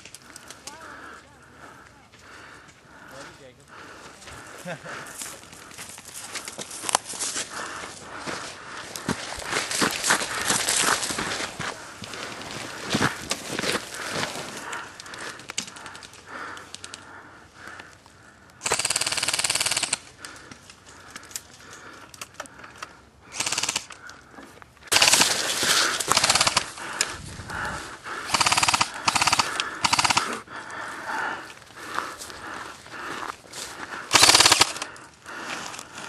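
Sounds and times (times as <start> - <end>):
airsoft guns firing bursts: 18.6 - 20.1, 23.3 - 24.0, 24.9 - 26.8, 28.2 - 30.4, 34.1 - 34.9.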